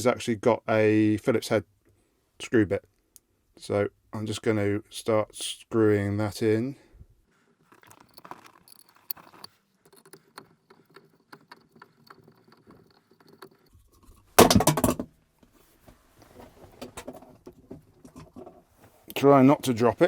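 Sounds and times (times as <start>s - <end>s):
screwdriver ticks and scrapes: 7.6s - 14.3s.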